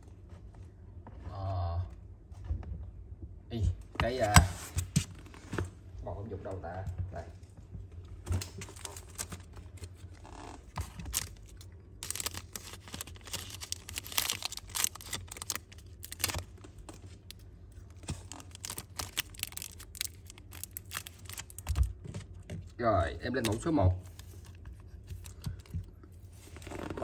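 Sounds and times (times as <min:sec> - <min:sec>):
steady low hum: 0:00.0 - 0:27.0
packaging rustling: 0:08.4 - 0:22.7, 0:23.3 - 0:27.0.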